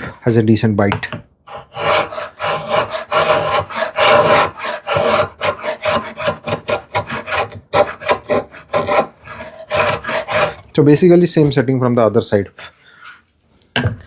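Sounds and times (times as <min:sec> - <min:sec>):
plane blade scraping wood: 0:01.5 - 0:11.0.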